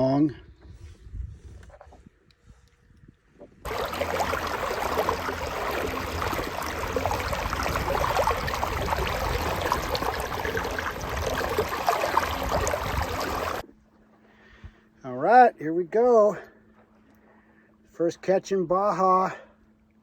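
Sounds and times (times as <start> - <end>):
water splashing and gurgling: 3.6 - 13.6.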